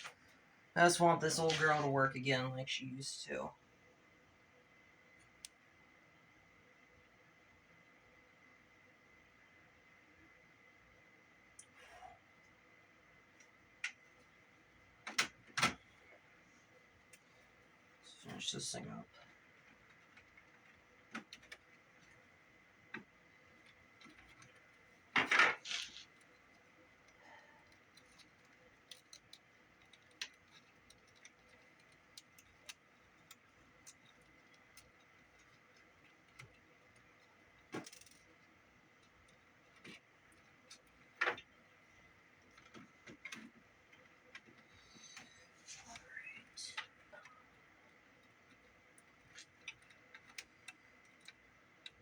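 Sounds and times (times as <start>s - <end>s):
small plastic parts clicking: 19.6s - 22.3s, 22.9s - 45.3s, 46.8s - 52.0s.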